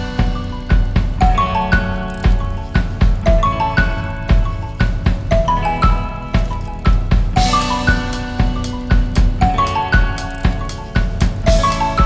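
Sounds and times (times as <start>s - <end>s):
drum beat with kick and snare: 0.0s - 12.0s
short repeating melody: 0.0s - 12.0s.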